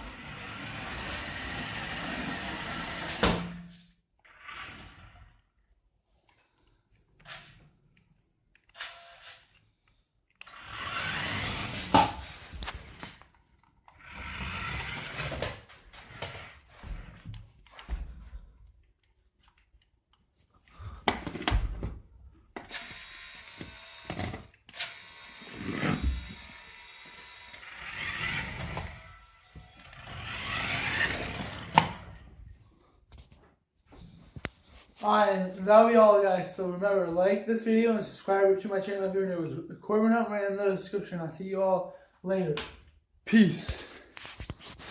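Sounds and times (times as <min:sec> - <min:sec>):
toy car electric motor whirring: 0:00.0 - 0:03.3, 0:04.2 - 0:05.5, 0:10.4 - 0:13.0, 0:13.9 - 0:16.6, 0:22.6 - 0:32.2.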